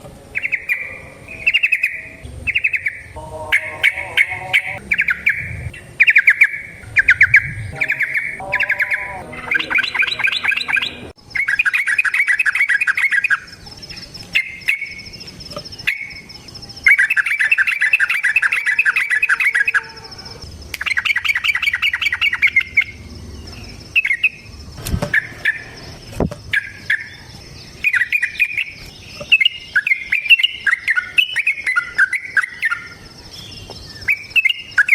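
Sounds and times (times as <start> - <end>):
thin steady high tone: 0.2 - 24.7
bird singing with trills: 0.2 - 34.9.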